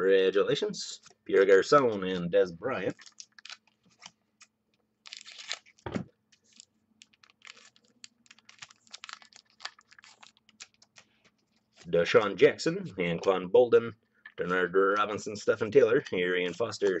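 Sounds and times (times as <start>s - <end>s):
trading cards clicking and rustling: 14.3s - 17.0s.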